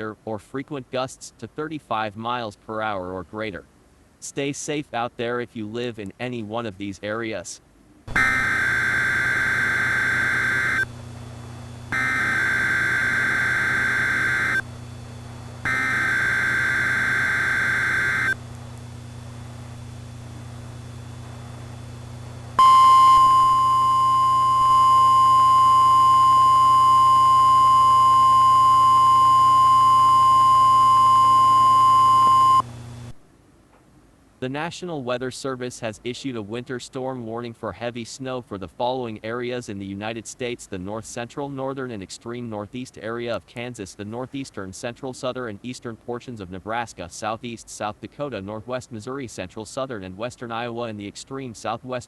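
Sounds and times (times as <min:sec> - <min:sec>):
raspy digital data bursts: 0:08.1 - 0:10.9, 0:11.9 - 0:14.6, 0:15.7 - 0:18.4
steady warning alarm tone: 0:08.1 - 0:10.9, 0:11.6 - 0:18.4, 0:22.6 - 0:32.6.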